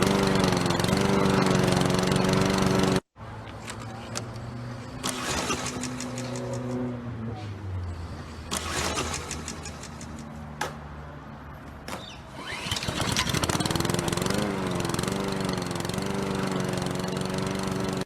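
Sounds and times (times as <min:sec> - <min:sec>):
lawn mower engine running: 0:00.0 - 0:06.9, 0:08.3 - 0:10.4, 0:12.2 - 0:18.0
sharp clicks: 0:03.4 - 0:06.8, 0:08.4 - 0:10.8.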